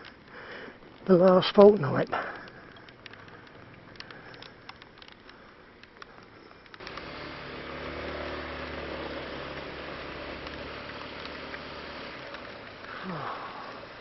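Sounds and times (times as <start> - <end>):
raindrops ticking on motorcycle: 0.0 - 14.0
motorcycle engine idling: 6.4 - 14.0.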